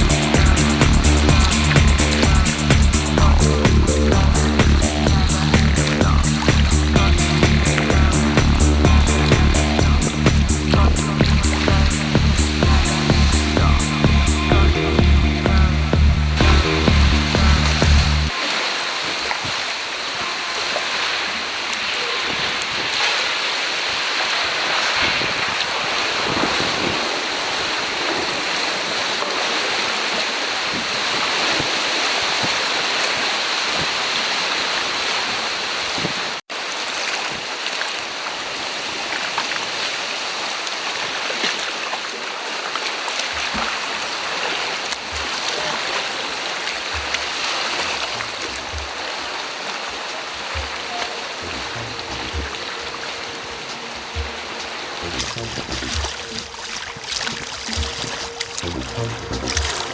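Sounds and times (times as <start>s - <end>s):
sea water splashing and rushing: 17.5s - 59.9s.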